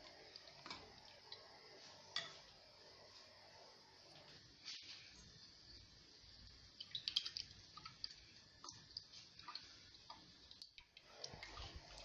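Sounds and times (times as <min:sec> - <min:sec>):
ladle stirring porridge in pot: 0:00.0 - 0:02.5, 0:06.8 - 0:12.0.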